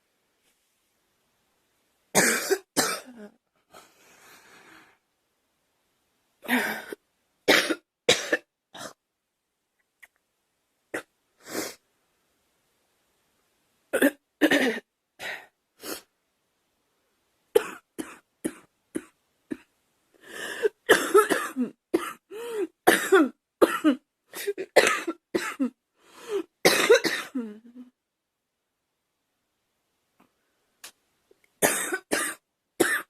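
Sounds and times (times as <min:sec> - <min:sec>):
girl coughing: 0:02.2 - 0:03.3, 0:07.5 - 0:09.0, 0:14.0 - 0:15.4, 0:17.6 - 0:19.7, 0:20.8 - 0:22.2, 0:22.9 - 0:25.8, 0:26.6 - 0:27.6, 0:31.6 - 0:33.0.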